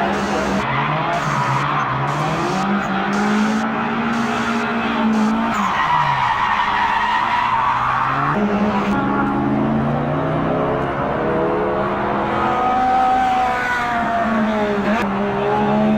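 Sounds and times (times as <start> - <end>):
tyres screeching: 0.0 - 9.0
car engine running: 0.0 - 12.6.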